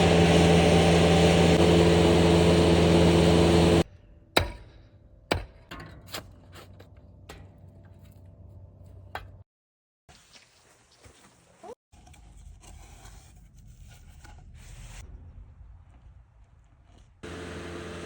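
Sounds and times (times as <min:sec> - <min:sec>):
motor-driven machine running: 0:17.2 - 0:18.0.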